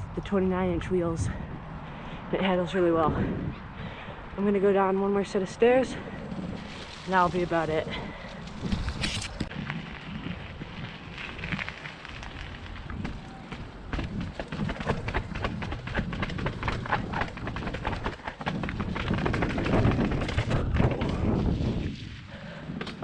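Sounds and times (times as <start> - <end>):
bike knocking and rattling: 5.9 - 23.0.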